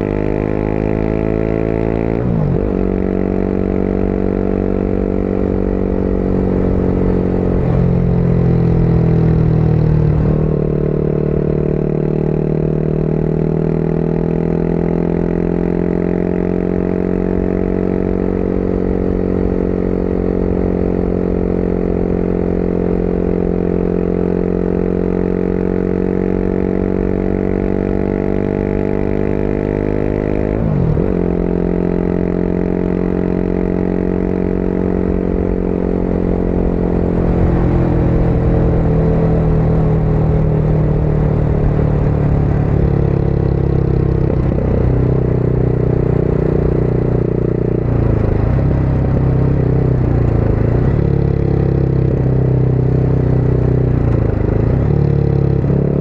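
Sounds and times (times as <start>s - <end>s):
motorcycle engine cruising: 0.0s - 56.0s
wind noise on microphone: 34.8s - 47.1s.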